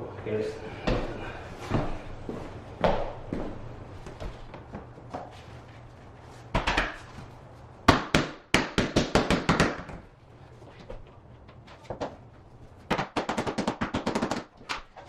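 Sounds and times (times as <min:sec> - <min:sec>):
sharp knocks on flooring: 0:06.5 - 0:07.1.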